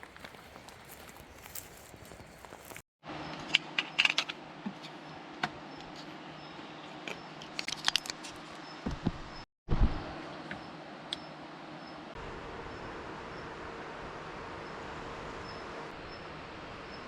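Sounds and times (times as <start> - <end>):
steady low hum: 8.6 - 17.0.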